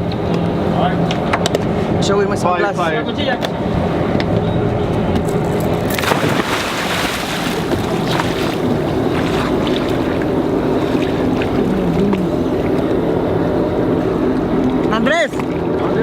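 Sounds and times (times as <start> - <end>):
boat engine idling: 5.6 - 16.0
water splashing: 5.9 - 13.0.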